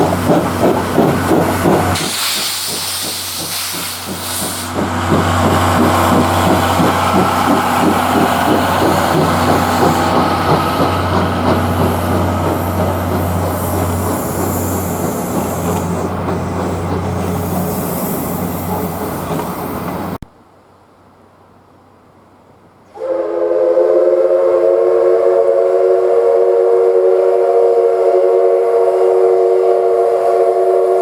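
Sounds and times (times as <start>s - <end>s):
steam train rumbling past: 0.0s - 20.2s, 22.9s - 31.0s.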